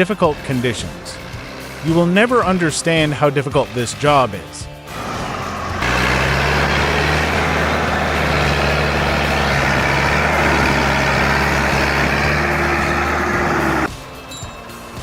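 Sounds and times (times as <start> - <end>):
heavy vehicle engine running: 0.0 - 15.0.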